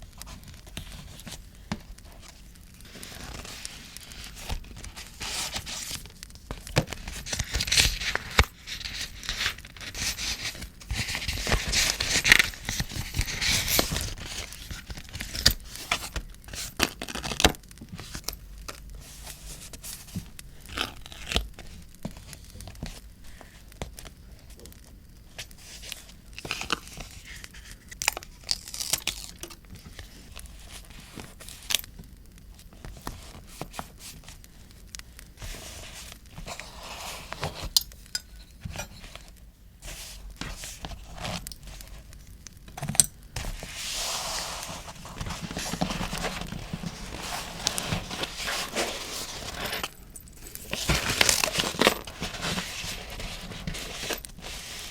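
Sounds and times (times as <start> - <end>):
paper crinkling and tearing: 0.0 - 18.4, 19.0 - 23.6, 24.6 - 31.9, 43.4 - 54.9.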